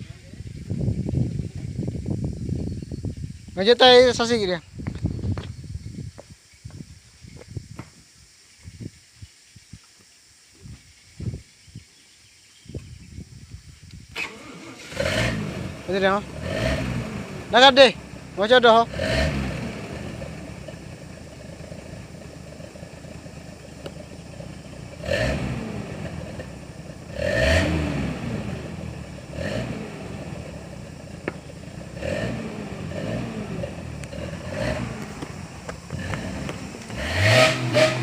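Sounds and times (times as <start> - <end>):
off-road engine revving: 14.2 - 38.0.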